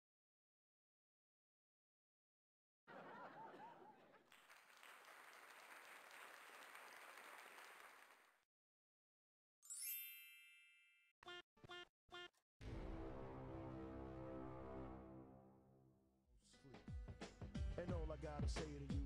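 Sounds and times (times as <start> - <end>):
applause and cheering: 4.2 - 8.4.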